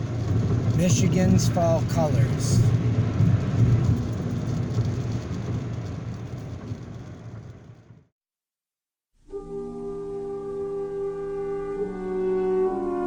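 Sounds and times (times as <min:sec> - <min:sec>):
car road and engine noise: 0:00.0 - 0:08.1
music with sustained brass tones: 0:09.2 - 0:13.0.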